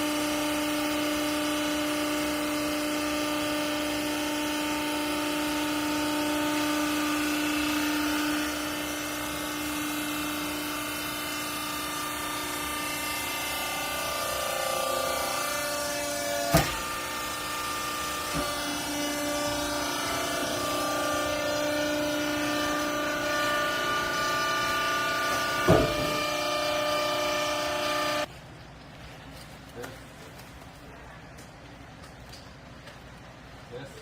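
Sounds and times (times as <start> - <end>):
hydraulic pump motor whine: 0.0 - 28.3
sharp knock: 25.6 - 26.2.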